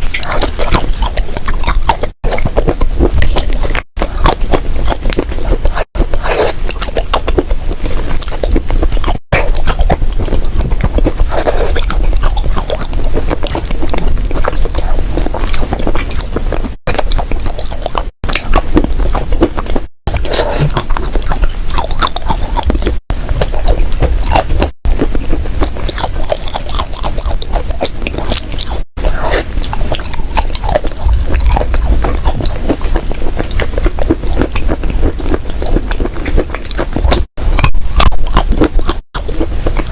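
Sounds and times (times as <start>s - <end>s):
crunching and chewing dry clay: 0.0s - 39.9s.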